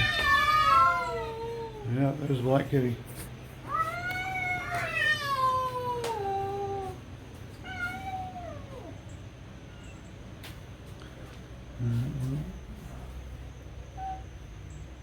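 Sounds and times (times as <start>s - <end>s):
cat yowling: 0.0s - 1.9s, 3.7s - 7.0s, 7.6s - 9.0s, 13.9s - 14.3s.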